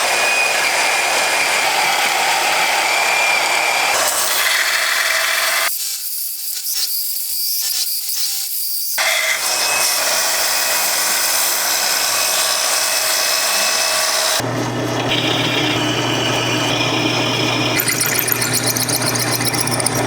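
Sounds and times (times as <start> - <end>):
grinder cutting steel plate: 7.2 - 20.0.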